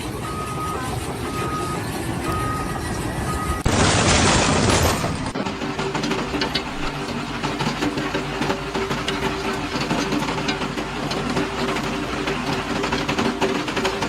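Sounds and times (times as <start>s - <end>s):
heavy machine engine running: 0.0s - 14.0s
light clatter: 4.7s - 14.0s.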